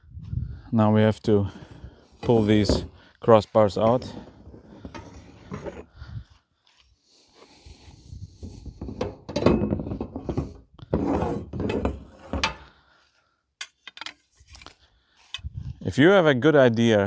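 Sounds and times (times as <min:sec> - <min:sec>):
metal scraping on metal: 0:01.4 - 0:03.0, 0:03.6 - 0:05.9, 0:08.4 - 0:12.7
metal clinks and knocks: 0:09.0 - 0:10.5, 0:11.6 - 0:12.7.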